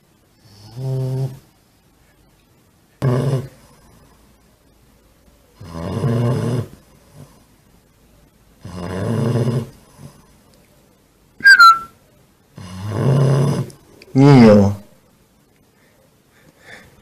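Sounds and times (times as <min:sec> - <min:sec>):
low snores: 0:00.4 - 0:01.4, 0:03.0 - 0:04.0, 0:05.6 - 0:07.4, 0:08.6 - 0:10.2, 0:12.6 - 0:13.8
high whistle: 0:11.4 - 0:12.0.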